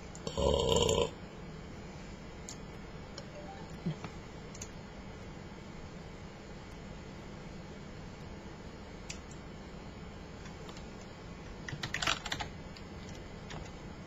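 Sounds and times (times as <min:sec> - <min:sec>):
low background hum: 0:00.0 - 0:14.0
typing on keyboard: 0:11.6 - 0:13.8.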